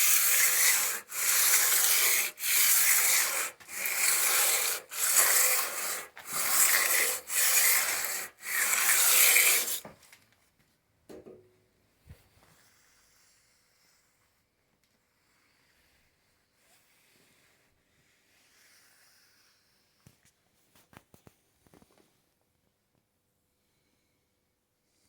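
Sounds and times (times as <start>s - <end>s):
abrasive rubbing metal rail: 0.0s - 9.9s.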